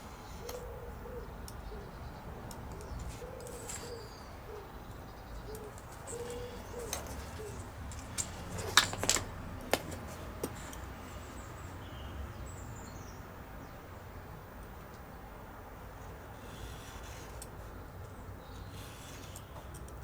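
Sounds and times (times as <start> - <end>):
dove cooing: 0.2 - 9.0.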